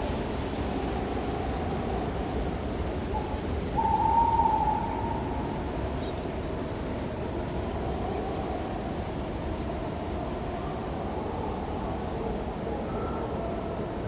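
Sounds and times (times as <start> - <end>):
low wind-like ambience: 0.0 - 14.0
owl hooting: 3.2 - 5.4.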